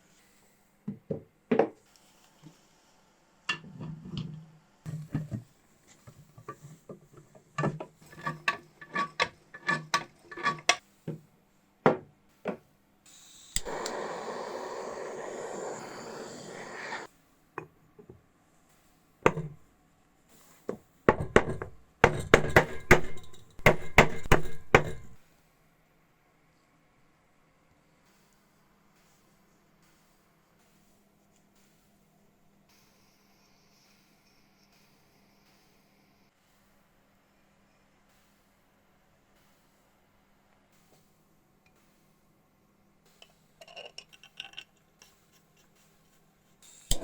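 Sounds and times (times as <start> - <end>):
steady hiss: 1.8 - 3.7, 12.3 - 17.4, 27.0 - 43.6, 44.9 - 47.0
tools and metal parts knocking: 7.6 - 10.8, 21.1 - 25.2.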